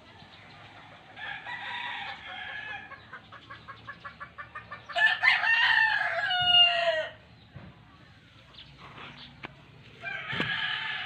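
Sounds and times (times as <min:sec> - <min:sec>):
rooster crowing: 0:01.2 - 0:03.0, 0:05.0 - 0:07.2, 0:10.0 - 0:11.0.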